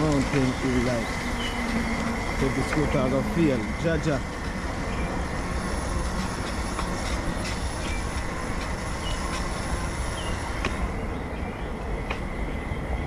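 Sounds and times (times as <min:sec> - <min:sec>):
motor scooter engine rumble: 0:00.0 - 0:13.0.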